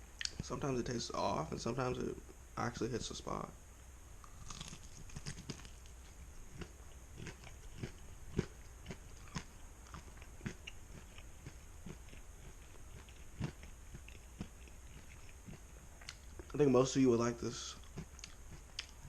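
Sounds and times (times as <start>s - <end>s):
chewing and crunching chicken wings: 4.2s - 16.7s, 17.5s - 19.0s.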